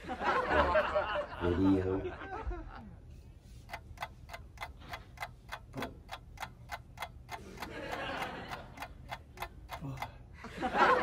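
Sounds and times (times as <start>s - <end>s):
rapid ticking: 3.6s - 10.3s.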